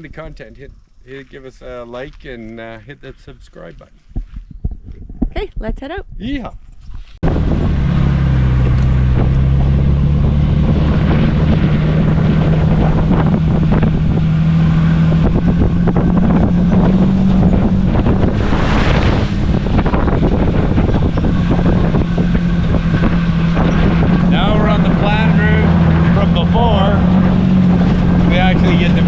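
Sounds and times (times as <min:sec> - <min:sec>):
wind noise: 0:00.0 - 0:29.0
car engine running: 0:07.2 - 0:29.0.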